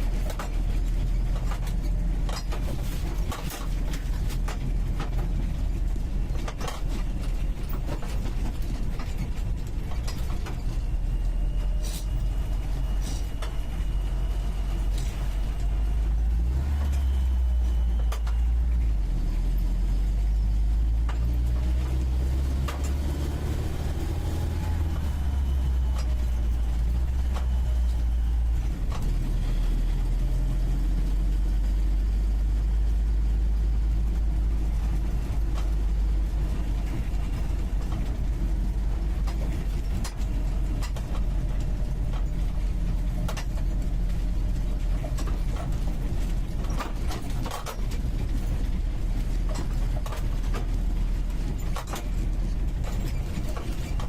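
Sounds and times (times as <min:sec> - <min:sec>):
car engine while driving: 0:00.0 - 0:54.0
vehicle body knocks and rattles: 0:36.4 - 0:54.0.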